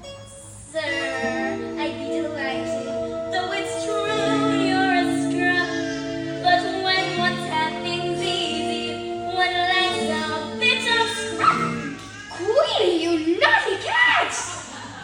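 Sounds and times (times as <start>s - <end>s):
instrumental accompaniment: 0.0s - 12.2s
person singing: 0.8s - 11.9s.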